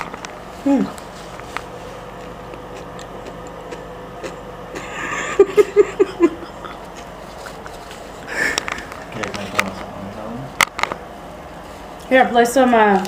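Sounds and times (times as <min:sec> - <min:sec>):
low background hum: 0:00.0 - 0:13.0
person laughing: 0:04.7 - 0:07.6, 0:08.2 - 0:08.9.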